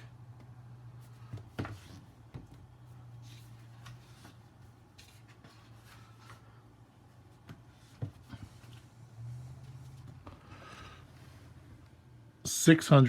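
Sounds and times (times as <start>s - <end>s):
steady low hum: 0.0s - 13.0s
paper rustling: 3.2s - 6.6s.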